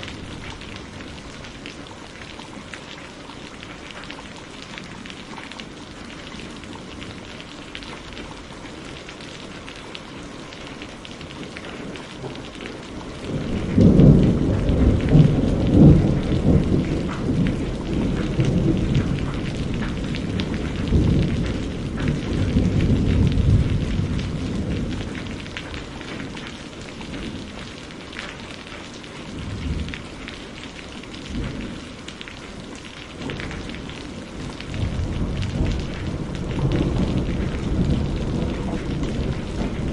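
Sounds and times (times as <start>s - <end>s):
heavy rain falling: 0.0s - 39.9s
thunder rumbling: 11.5s - 26.4s, 33.2s - 39.9s.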